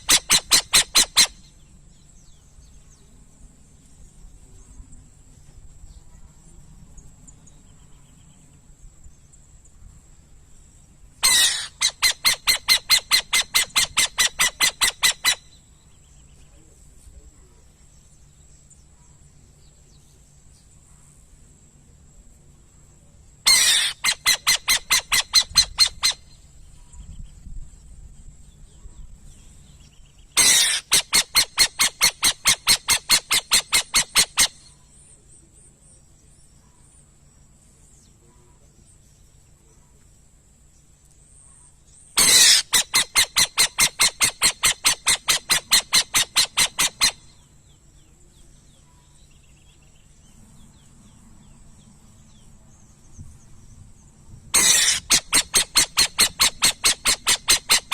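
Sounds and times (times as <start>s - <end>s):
owl chattering calls: 0.0s - 1.7s, 11.2s - 15.7s, 23.4s - 26.9s, 30.3s - 35.0s, 41.6s - 47.8s, 54.5s - 57.9s.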